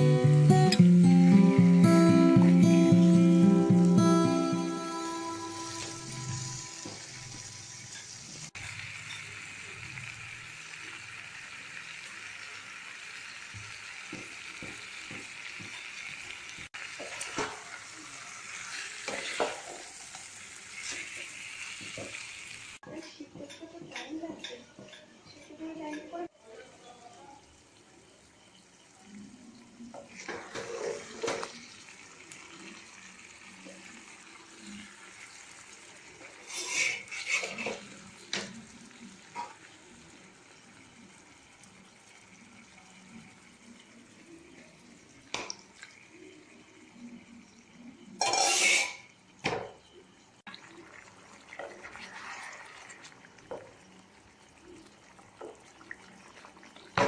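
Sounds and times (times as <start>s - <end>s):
pots and utensils clattering: 5.4s - 9.8s, 13.5s - 17.8s, 18.6s - 26.3s, 29.8s - 31.9s, 34.6s - 40.2s, 47.8s - 54.0s, 55.4s - 57.0s.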